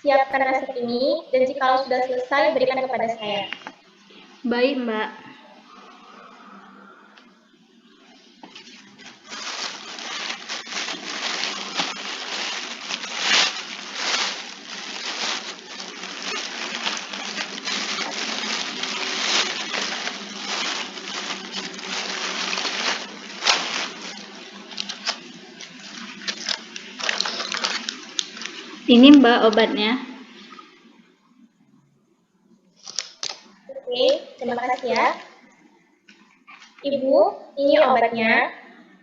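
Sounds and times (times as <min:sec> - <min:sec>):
crinkling and rustling: 0:08.3 - 0:29.6, 0:32.8 - 0:35.3.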